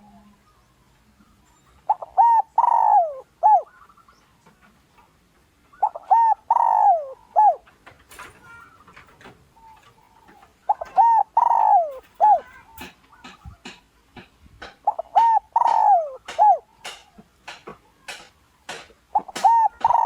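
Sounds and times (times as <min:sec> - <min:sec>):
dove cooing: 0:01.1 - 0:04.2, 0:05.7 - 0:13.8, 0:14.8 - 0:17.2, 0:18.0 - 0:20.0.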